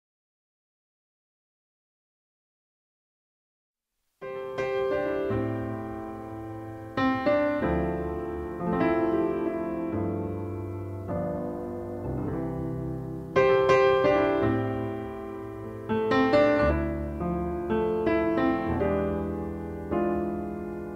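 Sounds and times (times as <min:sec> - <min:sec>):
slow piano chords: 0:04.2 - 0:20.9.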